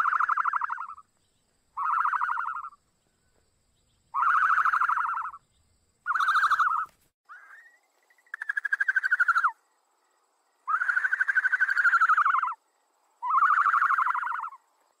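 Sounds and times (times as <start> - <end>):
bird trilling call: 0.0 - 1.0, 1.8 - 2.8, 4.1 - 5.4, 6.1 - 9.6, 10.7 - 12.6, 13.2 - 14.6.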